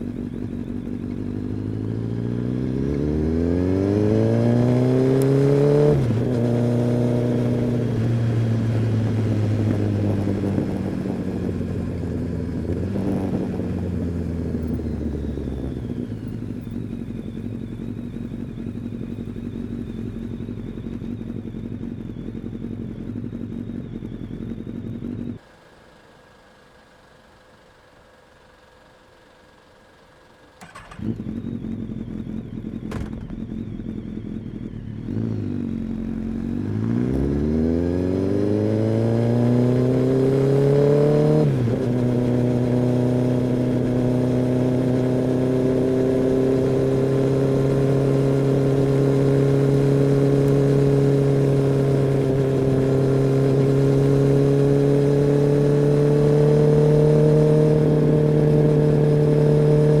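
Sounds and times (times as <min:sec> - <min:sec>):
motorcycle engine revving: 0:00.0 - 0:25.5, 0:30.5 - 1:00.0.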